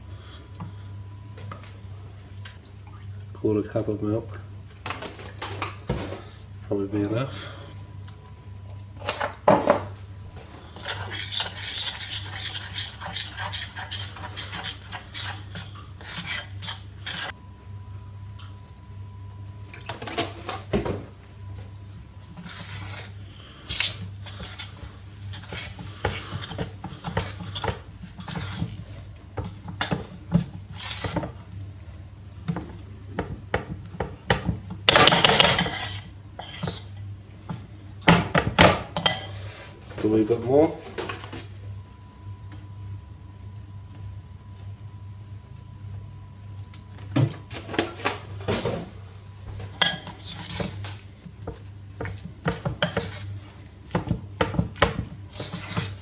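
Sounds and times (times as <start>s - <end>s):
utensil clinking in mixing bowl: 32.5s - 36.9s, 38.1s - 40.3s, 49.6s - 51.0s.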